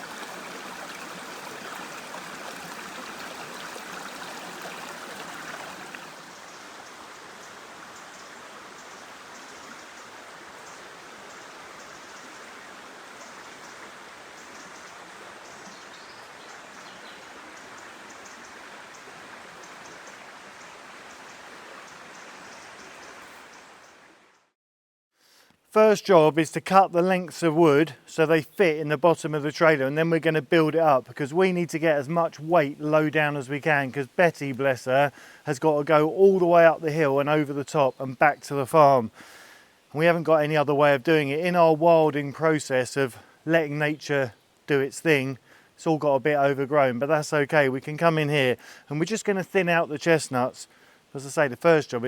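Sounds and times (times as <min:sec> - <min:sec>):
river flowing: 0:00.0 - 0:24.5, 0:25.8 - 0:52.0.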